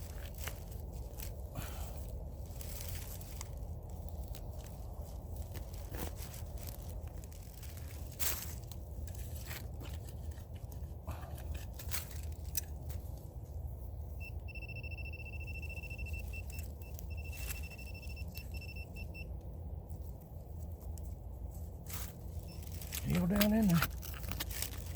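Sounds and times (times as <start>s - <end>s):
digging among rocks: 0.0s - 13.3s, 21.8s - 24.9s
metal detector high tone: 14.2s - 19.3s.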